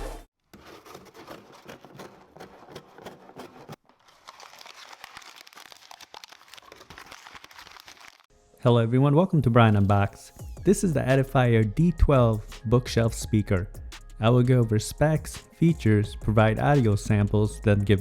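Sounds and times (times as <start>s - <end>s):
packaging crinkling and rustling: 0.6s - 8.3s.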